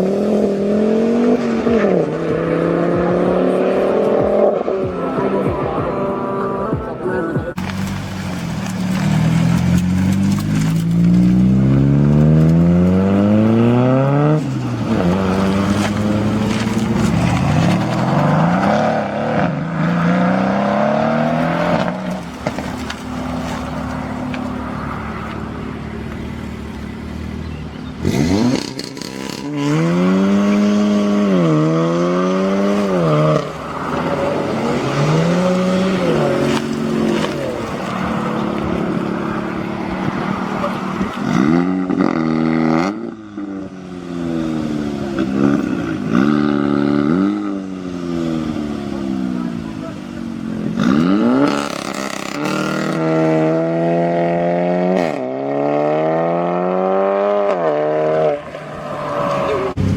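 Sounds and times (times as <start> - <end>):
car engines revving: 0.0 - 59.9.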